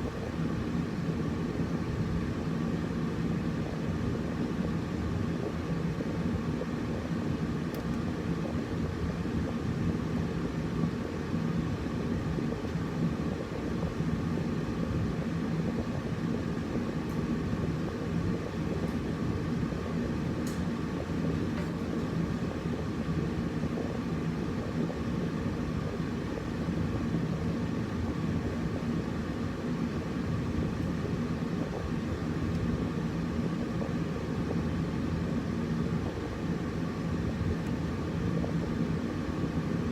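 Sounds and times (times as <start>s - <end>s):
air conditioner running: 0.0s - 39.9s.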